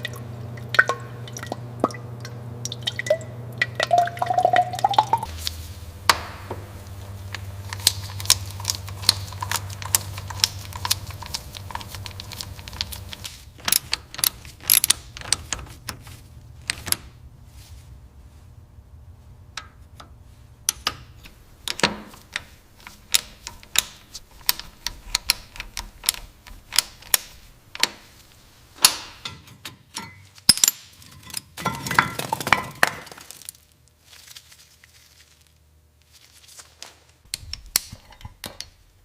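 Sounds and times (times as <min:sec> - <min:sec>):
hand tools clicking on metal: 0:07.3 - 0:16.0, 0:19.6 - 0:28.0.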